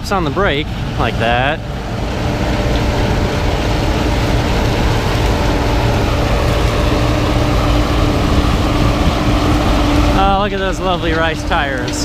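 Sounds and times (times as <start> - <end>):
combine harvester engine drone: 0.0 - 12.0.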